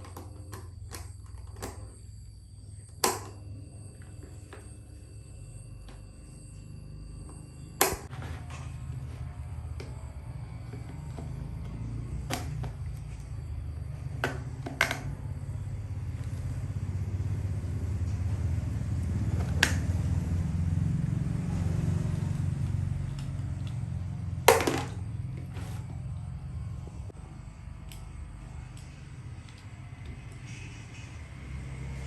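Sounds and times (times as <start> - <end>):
low motor-like rumble: 0.0 - 32.0.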